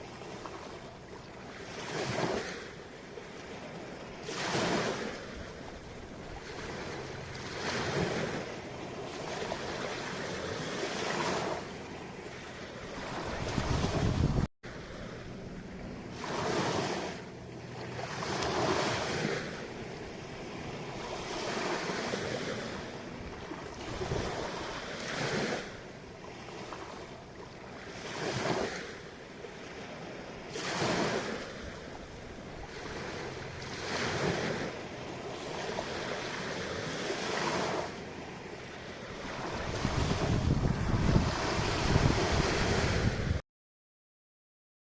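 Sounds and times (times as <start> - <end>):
ocean waves washing in: 0.0 - 43.4
wind buffeting microphone: 13.0 - 14.5, 23.2 - 24.6, 39.2 - 43.4.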